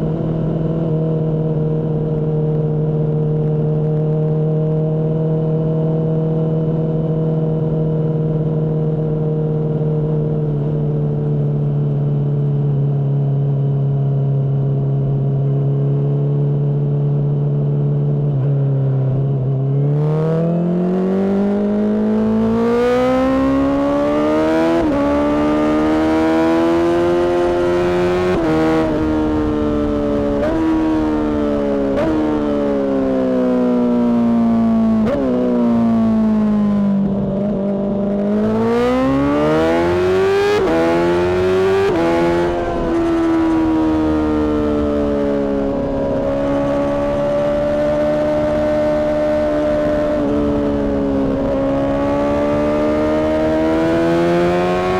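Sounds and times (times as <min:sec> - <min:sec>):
motorcycle engine revving: 0:15.0 - 0:54.9.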